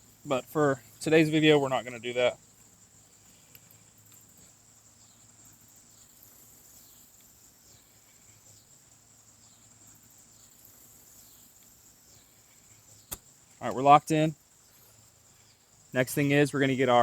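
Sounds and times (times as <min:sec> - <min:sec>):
insect chorus buzzing: 0:00.0 - 0:17.0.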